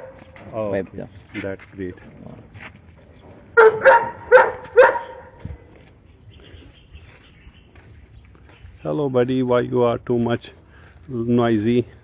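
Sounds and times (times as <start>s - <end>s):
dog barking: 0.0s - 0.2s, 3.6s - 5.4s.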